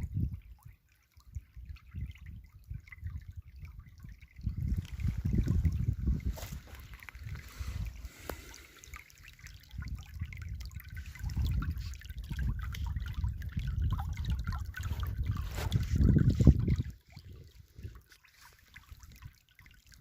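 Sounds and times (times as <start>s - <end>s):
river water flowing over stones: 4.5s - 13.0s.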